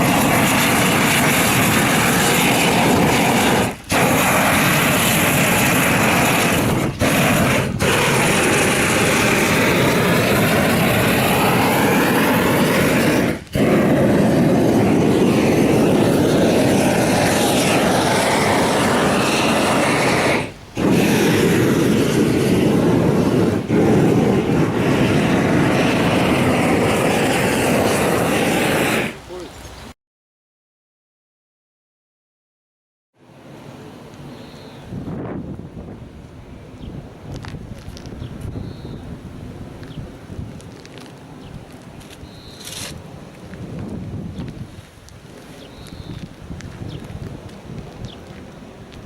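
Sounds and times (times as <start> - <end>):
loud steady roar: 0.0 - 29.2.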